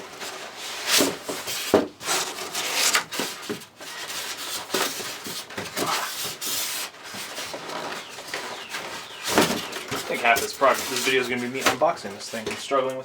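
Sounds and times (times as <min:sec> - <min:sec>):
cardboard and styrofoam scraping: 0:00.0 - 0:12.8.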